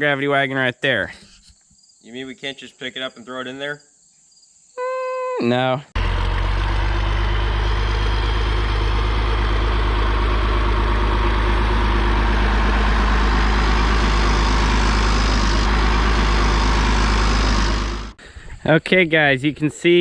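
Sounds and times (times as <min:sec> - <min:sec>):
tractor engine idling: 0:06.0 - 0:18.2.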